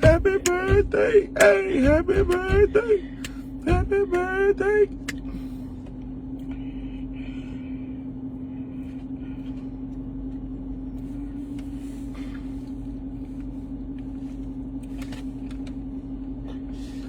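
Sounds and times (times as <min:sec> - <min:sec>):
steady mechanical hum: 0:00.0 - 0:17.0.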